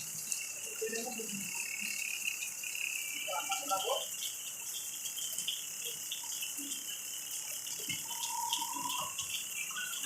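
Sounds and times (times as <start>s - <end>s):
steady rain falling: 0.0s - 10.0s
whistle-like tone: 8.0s - 10.0s.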